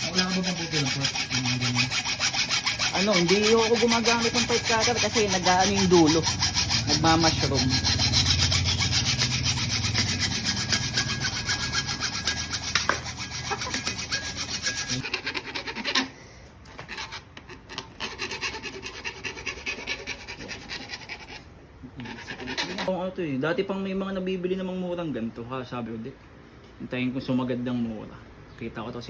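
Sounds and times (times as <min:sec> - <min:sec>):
hacksaw cutting metal tube: 0:00.0 - 0:16.1, 0:16.7 - 0:21.4, 0:22.0 - 0:22.9.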